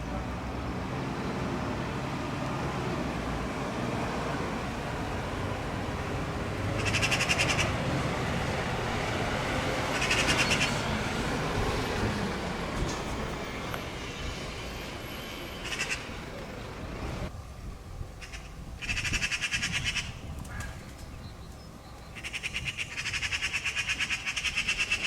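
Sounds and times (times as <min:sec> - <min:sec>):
magpies chattering rattle: 0:06.7 - 0:07.8, 0:09.8 - 0:10.9, 0:15.5 - 0:16.2, 0:18.2 - 0:25.0.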